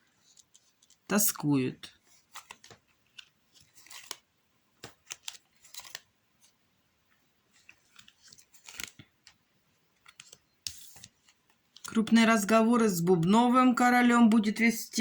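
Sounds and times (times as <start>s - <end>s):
playing cards clicking and swishing: 2.0s - 6.6s, 7.5s - 9.4s, 10.0s - 12.2s.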